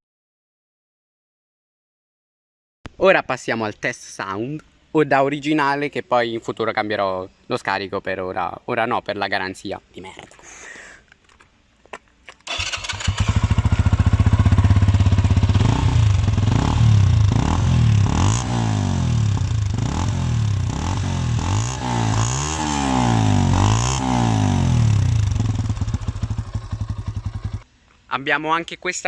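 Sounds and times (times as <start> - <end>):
motorcycle engine idling and revving: 12.5 - 27.7.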